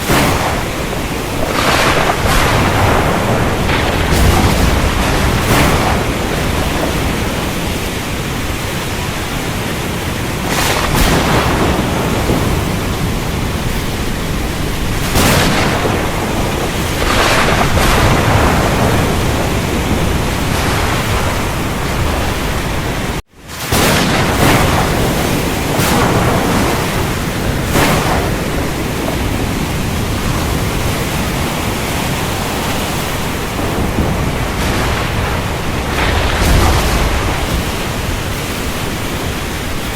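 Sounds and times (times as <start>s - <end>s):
heavy rain pouring: 0.0s - 39.9s
rolling thunder: 0.0s - 39.9s.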